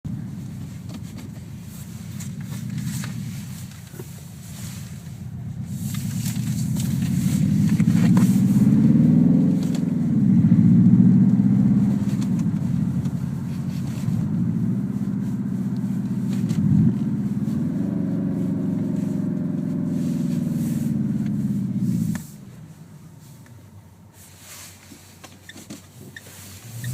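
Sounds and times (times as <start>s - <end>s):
simulated engine revving: 2.2s - 22.5s, 26.6s - 26.9s.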